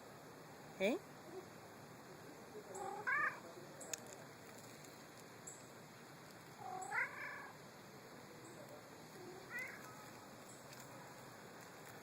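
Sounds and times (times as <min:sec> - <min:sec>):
cat meowing: 0:02.8 - 0:03.4, 0:06.6 - 0:07.6, 0:09.3 - 0:10.1.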